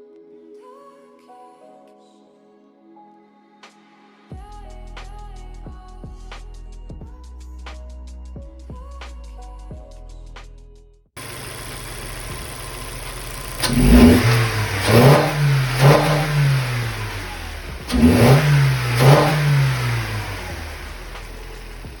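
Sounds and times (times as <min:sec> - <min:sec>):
car engine idling and revving: 0:11.2 - 0:22.0.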